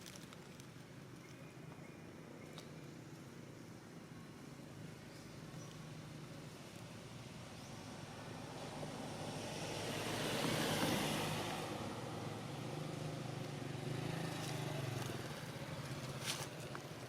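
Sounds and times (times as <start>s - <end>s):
motor vehicle passing: 8.1s - 16.8s.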